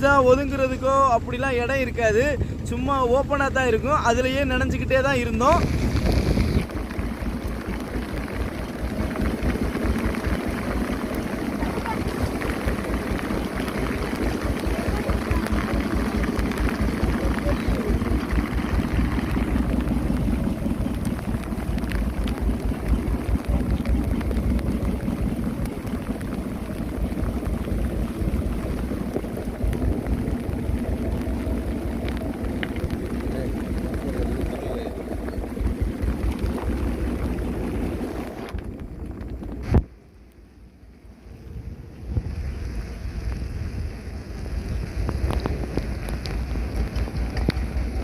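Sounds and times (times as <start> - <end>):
wind buffeting microphone: 0.0 - 40.1, 41.1 - 48.0
heavy rain on water: 0.0 - 48.0.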